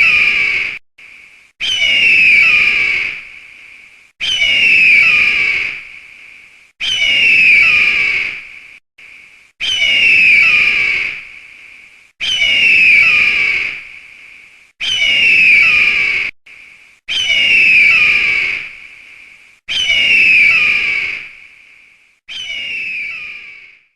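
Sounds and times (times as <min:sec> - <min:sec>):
eagle screeching: 0:00.0 - 0:00.8, 0:01.6 - 0:03.2, 0:04.2 - 0:05.8, 0:06.8 - 0:08.4, 0:09.6 - 0:11.2, 0:12.2 - 0:13.8, 0:14.8 - 0:16.3, 0:17.1 - 0:18.7, 0:19.7 - 0:21.3, 0:22.3 - 0:23.9.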